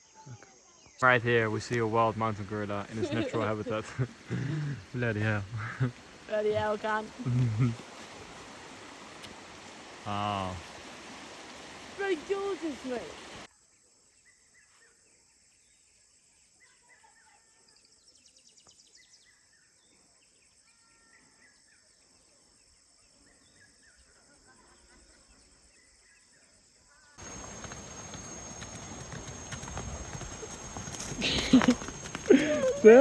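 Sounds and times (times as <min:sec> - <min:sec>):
high insect hum: 0:00.0 - 0:14.3, 0:26.9 - 0:33.0
bird chirps: 0:27.2 - 0:33.0
rustling: 0:27.2 - 0:33.0.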